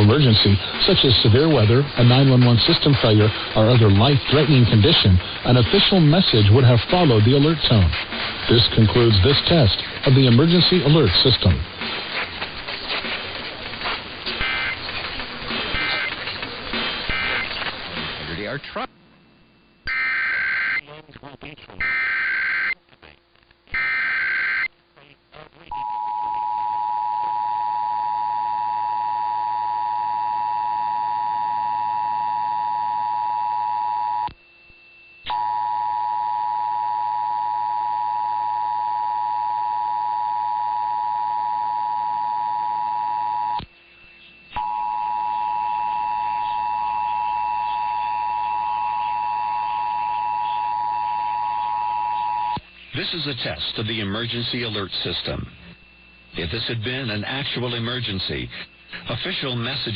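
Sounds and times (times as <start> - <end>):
faint broadcast hiss: 0.0 - 25.8, 43.6 - 59.9.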